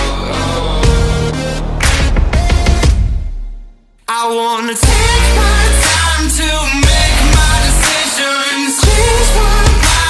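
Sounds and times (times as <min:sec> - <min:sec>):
pop-rock song with sung vocals: 0:04.1 - 0:10.0.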